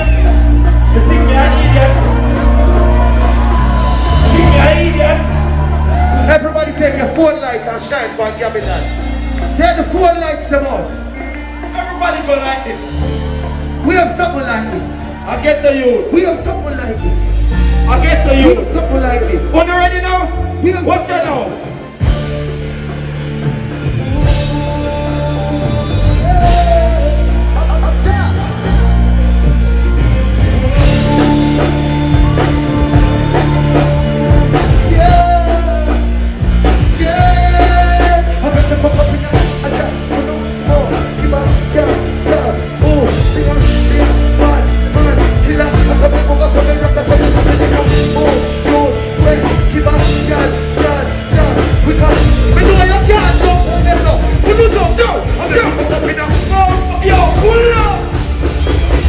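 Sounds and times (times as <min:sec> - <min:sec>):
person singing: 0:23.5 - 0:58.2.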